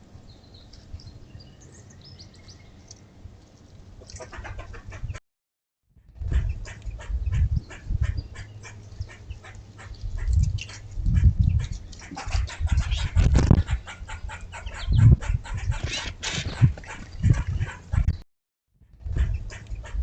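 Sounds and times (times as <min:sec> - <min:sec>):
small birds chirping: 0:00.3 - 0:03.2, 0:06.4 - 0:16.1.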